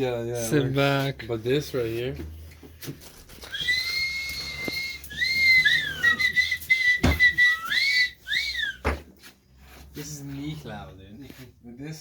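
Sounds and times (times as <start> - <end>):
person whistling: 3.4 - 9.0
thump: 7.0 - 7.4.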